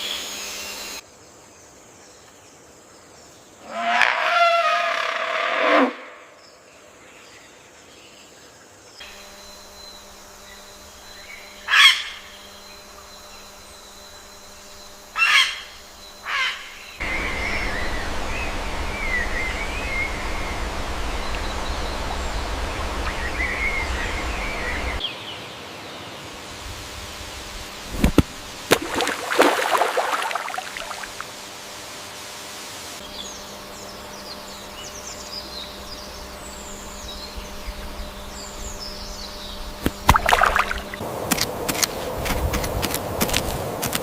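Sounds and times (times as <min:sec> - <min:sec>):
birds calling and chirping: 0:06.5 - 0:26.1, 0:33.0 - 0:43.7.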